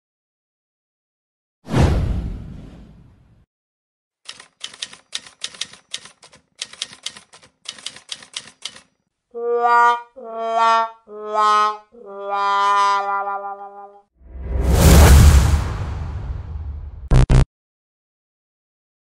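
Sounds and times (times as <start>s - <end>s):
typewriter keys clacking: 4.3s - 8.9s.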